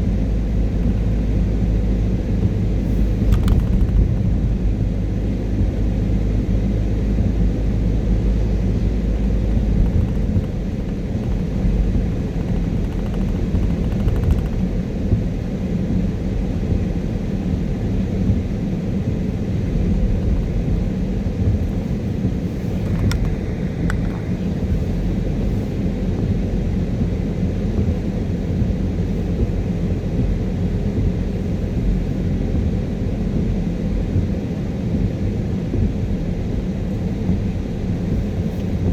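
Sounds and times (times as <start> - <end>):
car engine drone: 0.0 - 38.9
tyre noise on wet road: 2.4 - 6.0, 8.1 - 15.4.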